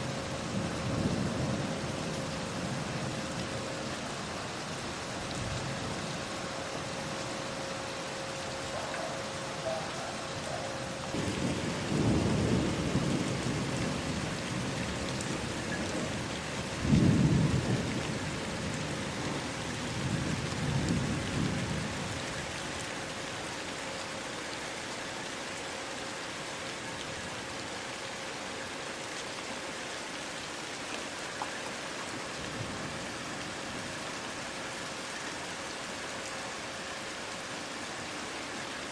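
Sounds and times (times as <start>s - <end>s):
steady rain: 0.0s - 38.9s
thunder rumbling: 8.7s - 22.0s.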